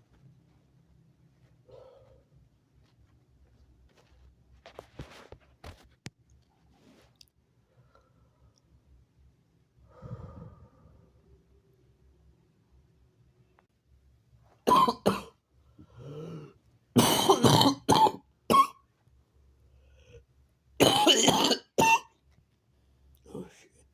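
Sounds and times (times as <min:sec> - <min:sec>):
person coughing: 0:14.7 - 0:15.3, 0:16.3 - 0:18.8, 0:20.8 - 0:22.1.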